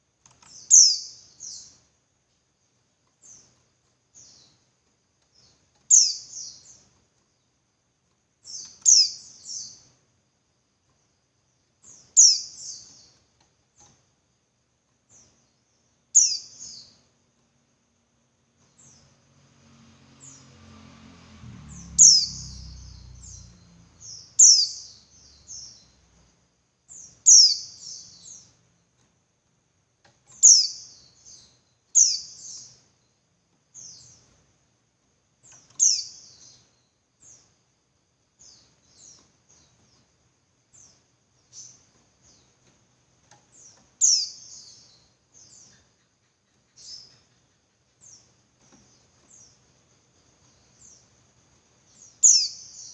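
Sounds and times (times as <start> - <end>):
bird chirping: 0.0 - 14.1, 14.9 - 29.4, 30.0 - 34.7, 35.4 - 52.9
faint low rumble: 18.6 - 26.6.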